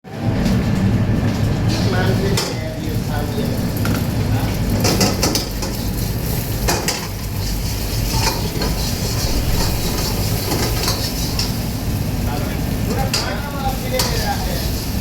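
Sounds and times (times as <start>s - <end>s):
food sizzling in a pan: 1.7s - 15.0s
metal spatula scraping pan: 6.9s - 11.5s.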